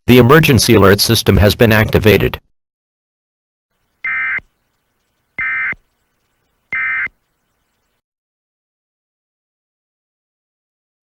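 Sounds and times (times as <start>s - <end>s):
high digital tone bursts: 4.0s - 4.4s, 5.4s - 7.5s.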